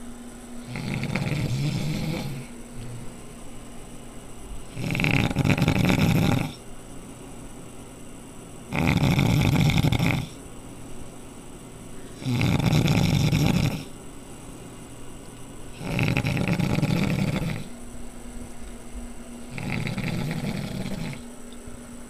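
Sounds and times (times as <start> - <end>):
dog snoring: 0.6 - 3.1, 4.7 - 6.6, 8.7 - 10.4, 12.2 - 14.0, 15.7 - 17.8, 19.4 - 21.3
dog breathing: 15.8 - 17.7, 19.5 - 21.3.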